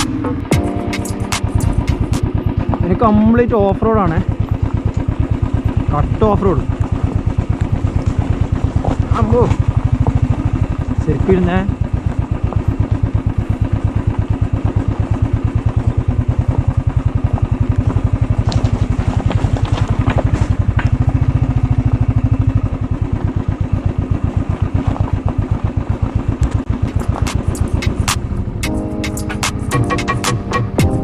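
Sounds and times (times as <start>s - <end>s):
motorcycle engine running: 0.0s - 31.0s
rattles and clicks: 12.4s - 21.2s, 26.0s - 30.9s.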